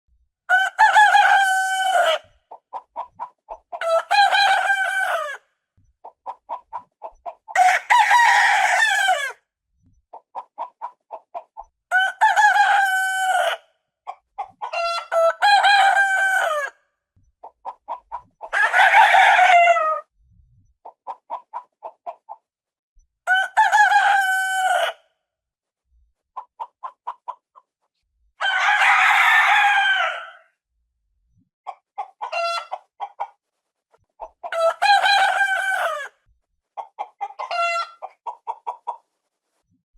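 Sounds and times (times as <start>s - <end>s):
rooster crowing: 0.5s - 2.2s, 3.8s - 5.4s, 7.6s - 9.4s, 11.9s - 13.6s, 14.7s - 16.7s, 18.5s - 20.0s, 23.3s - 25.0s, 28.4s - 30.5s, 34.5s - 36.1s
rooster clucking: 0.5s - 5.4s, 6.0s - 9.4s, 10.1s - 16.8s, 17.4s - 20.0s, 20.8s - 22.4s, 26.4s - 27.7s, 31.7s - 33.4s, 34.1s - 36.2s, 36.8s - 39.0s.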